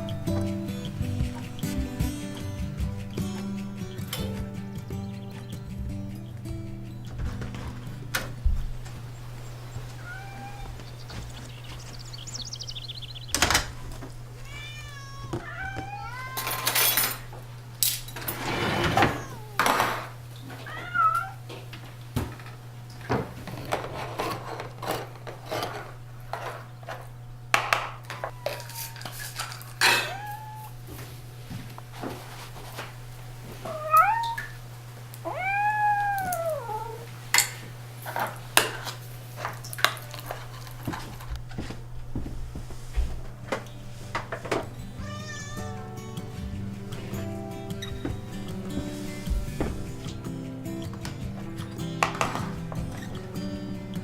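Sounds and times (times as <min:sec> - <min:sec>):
steady low hum: 0:00.0 - 0:14.5
cats meowing: 0:08.8 - 0:16.8, 0:18.7 - 0:21.5, 0:28.0 - 0:30.9, 0:33.3 - 0:37.2, 0:45.0 - 0:45.9.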